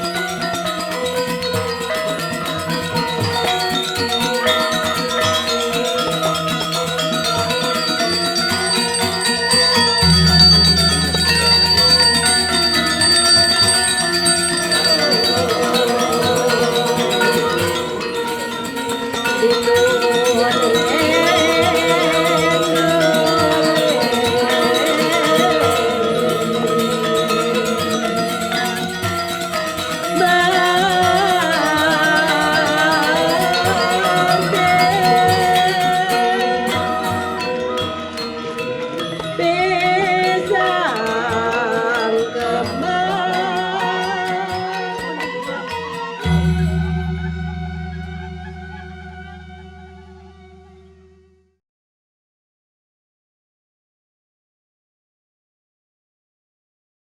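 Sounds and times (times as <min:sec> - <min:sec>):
metallophones playing ringing tones: 0:00.0 - 0:51.1
deep gong stroke: 0:46.3 - 0:51.4.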